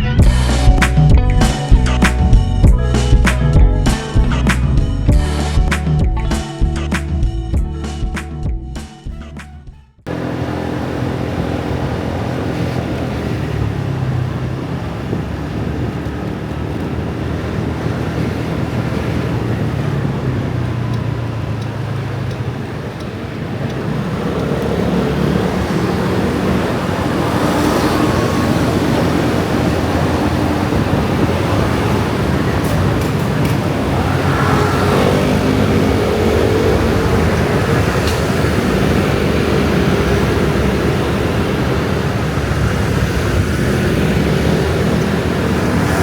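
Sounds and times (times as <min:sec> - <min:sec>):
scooters and motorbikes passing: 0:10.1 - 0:46.0.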